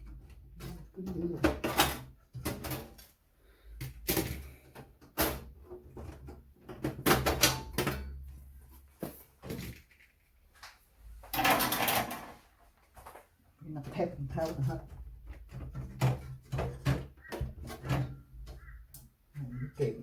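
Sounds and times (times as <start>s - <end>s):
screws and metal cover clattering: 0.0s - 3.2s, 3.8s - 8.4s, 11.3s - 12.5s, 13.9s - 19.0s.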